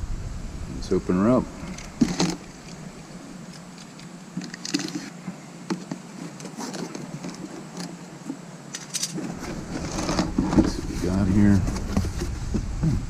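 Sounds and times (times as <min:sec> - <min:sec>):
packaging rustling and scraping: 0:03.5 - 0:13.0
cardboard box being opened: 0:09.2 - 0:13.0.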